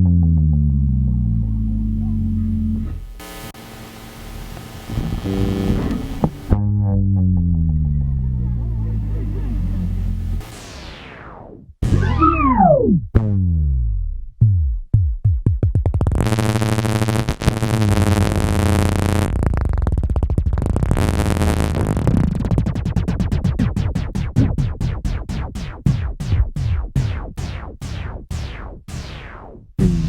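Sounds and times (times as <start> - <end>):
electric bass guitar with effects: 0.0 - 24.7, 25.9 - 30.0.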